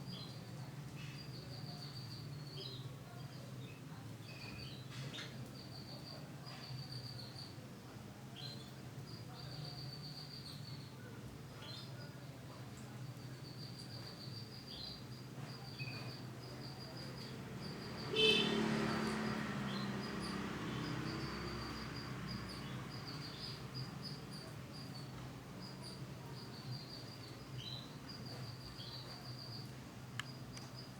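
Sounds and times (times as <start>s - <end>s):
canary chirping: 15.6s - 30.8s.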